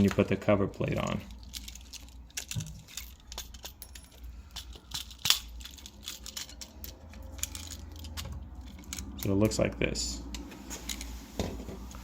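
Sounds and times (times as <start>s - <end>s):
small clicks and scrapes: 1.3s - 9.5s.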